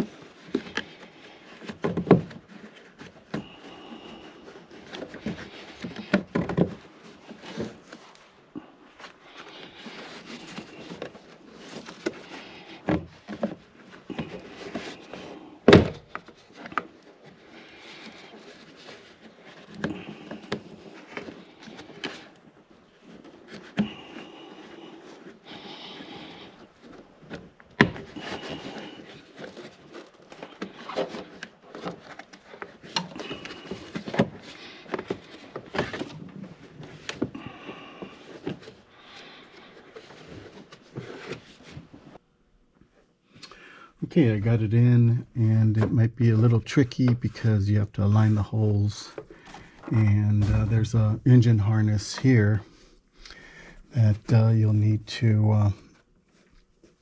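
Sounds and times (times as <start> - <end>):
plastic trim scraping: 9.0 - 41.9.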